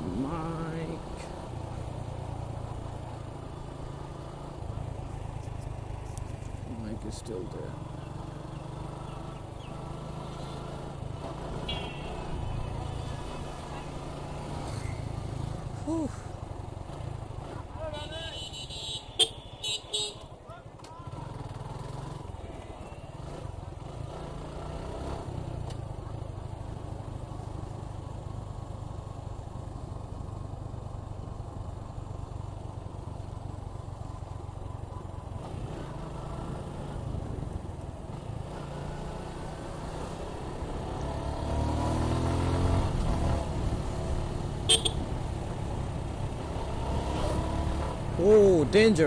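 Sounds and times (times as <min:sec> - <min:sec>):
road noise: 0:00.0 - 0:49.0
motorcycle engine running: 0:42.4 - 0:48.8.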